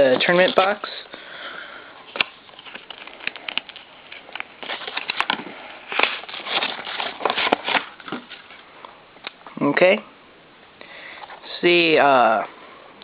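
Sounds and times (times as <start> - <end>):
packaging clicks and crinkling: 2.1 - 8.6.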